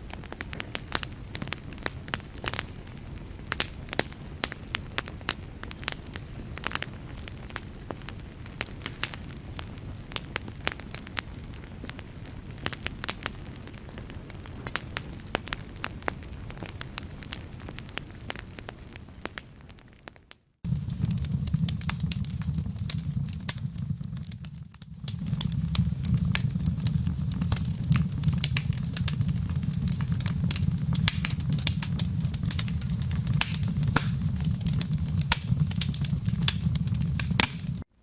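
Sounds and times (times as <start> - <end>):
wood fire crackling: 0.0 - 37.9
fire popping sharply: 20.6 - 37.9
steady low rumble: 20.7 - 37.8.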